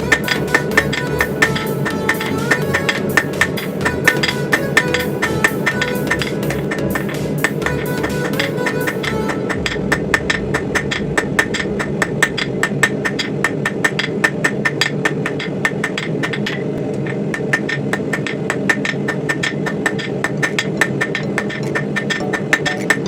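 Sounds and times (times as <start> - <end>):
low drone: 0.0 - 16.9.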